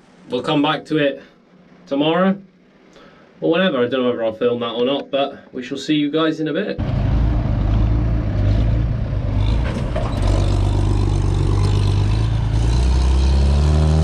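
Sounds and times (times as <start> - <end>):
diesel engine running: 6.8 - 14.0.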